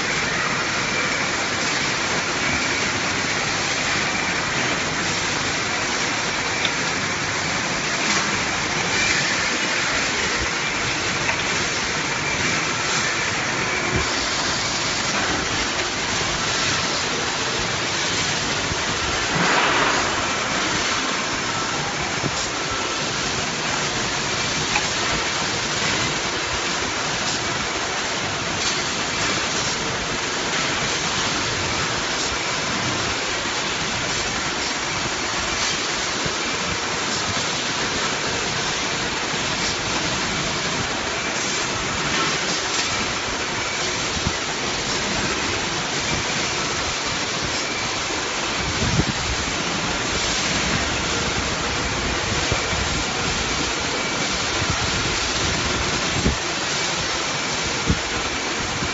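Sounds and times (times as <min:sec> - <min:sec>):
machinery rushing hiss: 0:00.0 - 0:58.9.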